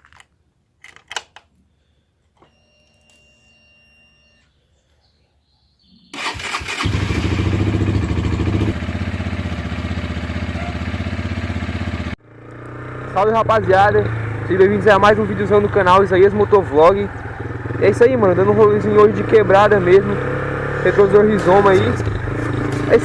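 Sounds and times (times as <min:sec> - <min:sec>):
starter clicks: 0:00.0 - 0:01.6
motorcycle engine idling: 0:06.4 - 0:12.5, 0:13.8 - 0:19.0.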